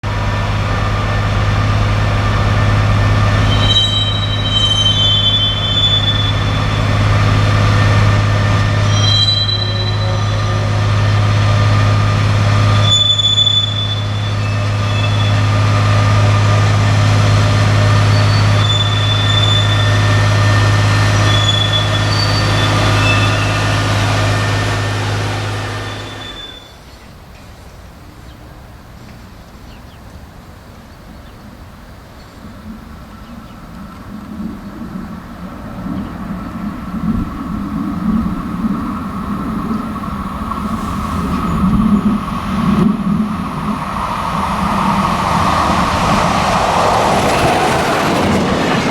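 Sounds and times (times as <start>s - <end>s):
train rolling past: 0.0s - 29.4s, 35.4s - 48.9s
train wheel squeals: 0.2s - 27.1s, 39.6s - 48.9s.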